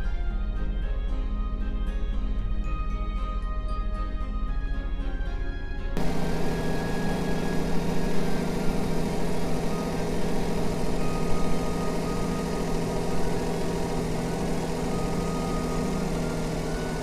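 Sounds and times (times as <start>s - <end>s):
car engine idling: 6.0s - 17.0s.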